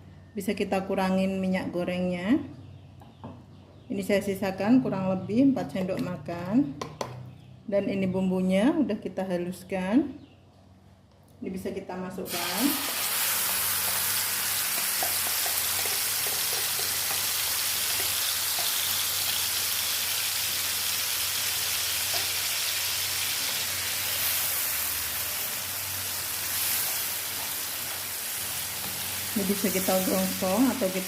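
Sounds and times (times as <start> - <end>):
paste sizzling in hot oil: 12.3 - 31.0.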